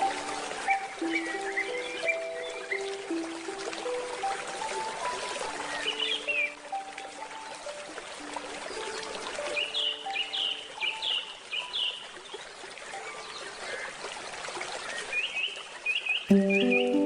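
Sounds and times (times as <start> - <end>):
water trickling: 0.0 - 17.0
birds chirping: 0.1 - 4.4, 5.0 - 6.6, 8.7 - 14.0, 15.0 - 17.0
handpan chord struck: 16.3 - 17.0
handpan notes: 16.3 - 17.0.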